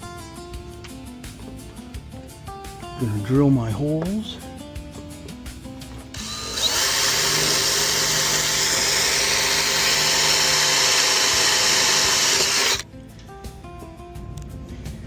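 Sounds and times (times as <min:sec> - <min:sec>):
power drill drilling into metal: 0:06.2 - 0:12.8.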